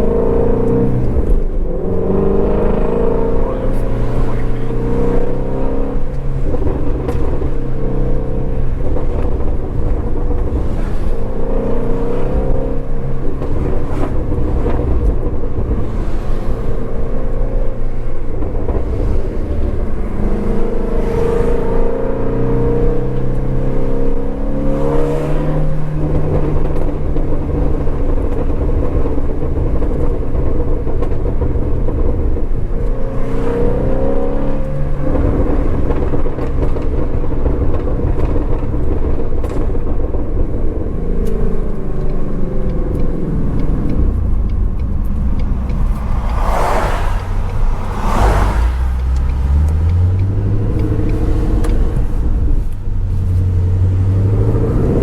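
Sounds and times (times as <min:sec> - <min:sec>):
car engine revving while driving: 0:00.0 - 0:55.0.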